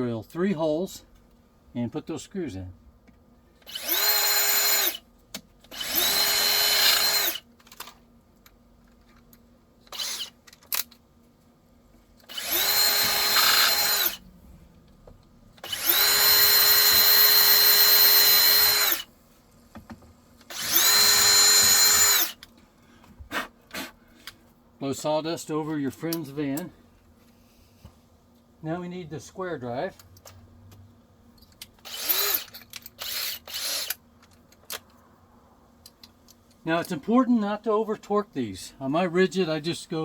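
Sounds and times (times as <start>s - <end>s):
power drill whining: 3.7s - 5.0s, 5.7s - 7.4s, 9.9s - 10.3s, 12.3s - 14.2s, 15.6s - 19.1s, 20.5s - 22.4s, 31.8s - 34.0s.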